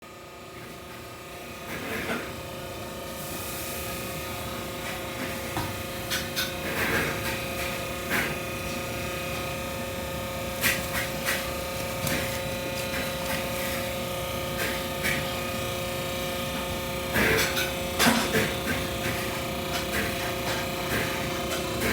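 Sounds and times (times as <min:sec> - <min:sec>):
machine humming: 0:08.4 - 0:21.9.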